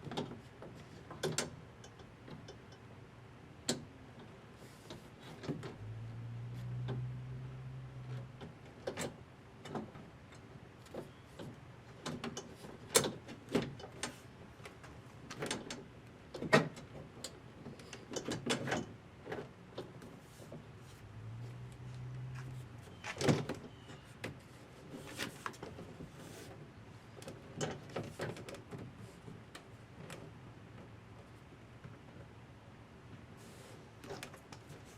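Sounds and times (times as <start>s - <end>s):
power window motor humming: 5.8s - 8.4s.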